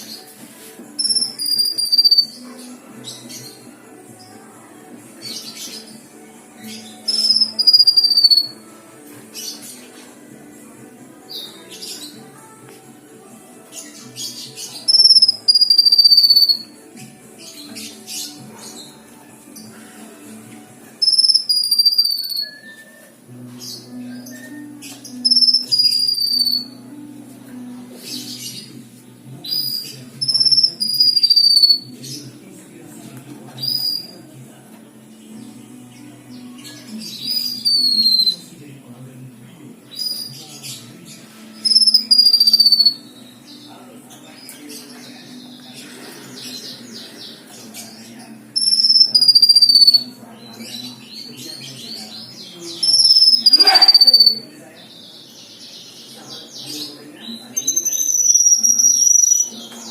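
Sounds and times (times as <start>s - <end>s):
songbird whistling: 1.0s - 2.4s, 6.7s - 8.6s, 14.3s - 16.8s, 21.0s - 26.8s, 29.4s - 31.9s, 33.6s - 34.1s, 37.1s - 38.4s, 39.9s - 40.4s, 41.6s - 43.6s, 48.6s - 50.2s, 52.8s - 54.4s, 57.6s - 59.6s.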